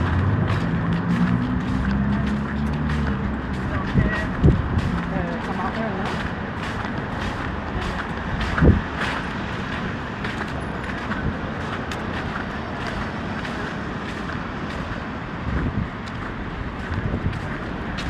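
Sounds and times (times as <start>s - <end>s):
steady traffic noise: 0.0s - 18.0s.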